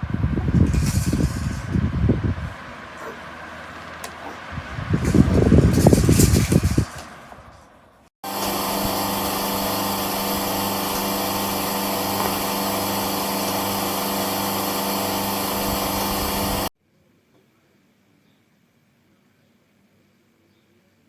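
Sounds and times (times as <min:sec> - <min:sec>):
floor fan whirring: 0:00.0 - 0:16.7.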